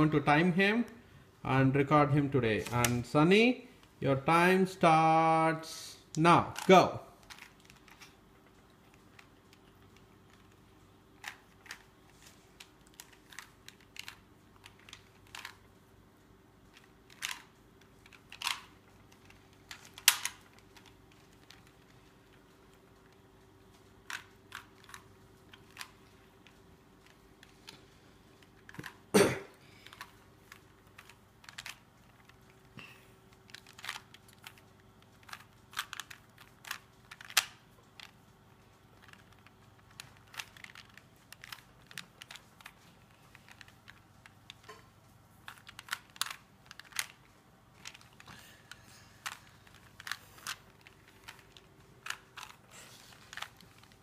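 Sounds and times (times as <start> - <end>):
plastic cube clicking: 6.5 - 8.1, 12.6 - 15.6, 16.8 - 21.8, 28.4 - 29.1, 29.8 - 32.6, 33.3 - 38.2, 39.0 - 44.7, 45.4 - 48.4, 49.2 - 54.0.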